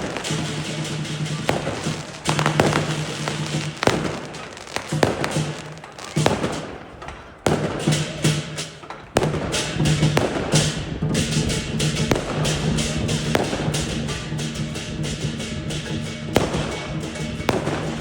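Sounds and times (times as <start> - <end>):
fireworks bangs: 0.0 - 18.0
fireworks crackle: 0.0 - 18.0.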